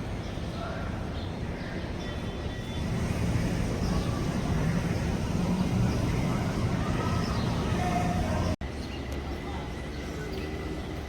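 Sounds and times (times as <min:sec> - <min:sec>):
faint distant voices: 0:00.2 - 0:11.0
low engine-like rumble: 0:02.7 - 0:10.3.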